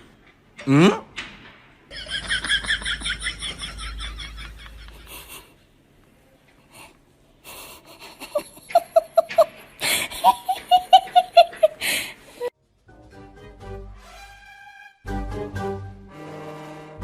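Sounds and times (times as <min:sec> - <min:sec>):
baby laughing: 0:08.2 - 0:12.0
music: 0:12.6 - 0:17.0.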